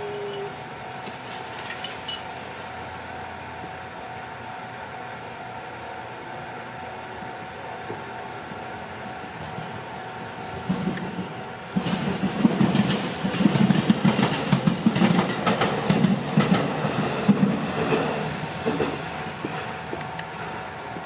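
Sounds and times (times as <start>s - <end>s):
train wheels clattering over rail joints: 10.6s - 21.0s.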